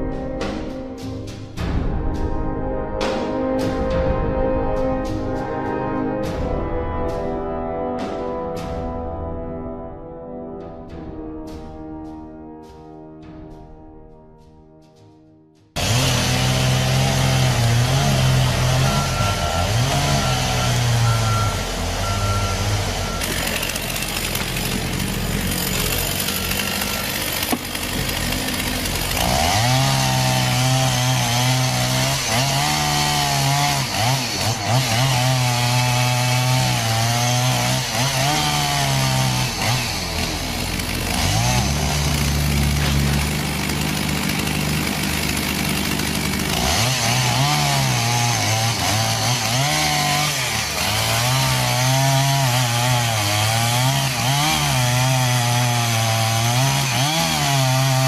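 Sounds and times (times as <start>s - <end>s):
chainsaw cutting wood: 15.8s - 58.0s.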